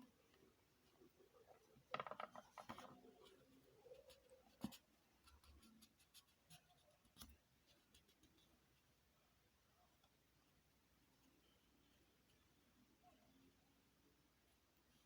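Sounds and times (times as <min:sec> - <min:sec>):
felt pieces rustling and clicking: 0:00.2 - 0:08.5.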